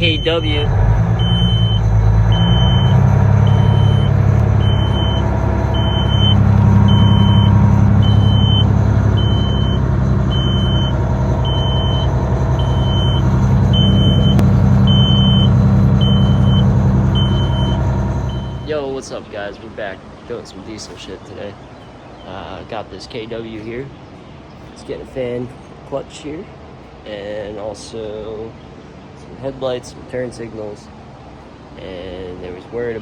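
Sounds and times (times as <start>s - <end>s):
high-pitched warning beep: 0.0s - 18.7s
diesel truck engine running: 0.0s - 19.5s.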